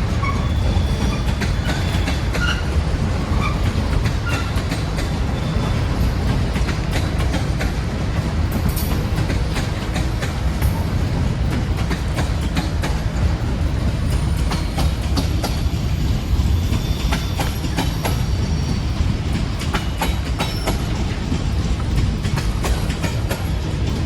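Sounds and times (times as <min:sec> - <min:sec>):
high wheel squeals: 0:00.0 - 0:06.5, 0:14.1 - 0:21.4
freight train rumble: 0:00.0 - 0:24.0
wheels clicking over rail joints: 0:00.0 - 0:24.0.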